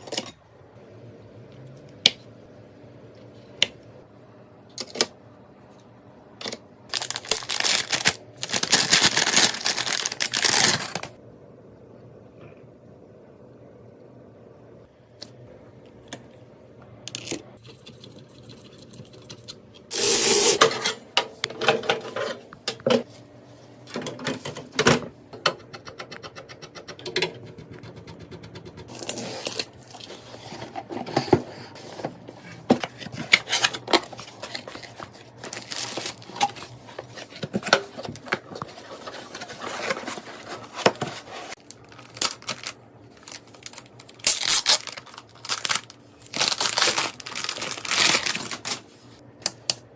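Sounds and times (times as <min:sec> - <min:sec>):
packaging crinkling: 0:06.9 - 0:11.2, 0:33.2 - 0:48.9.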